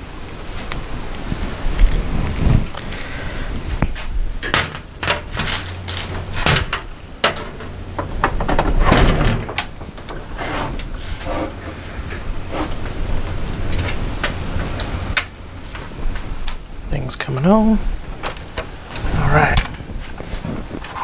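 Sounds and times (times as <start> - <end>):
computer case scraping: 3.6 - 16.4.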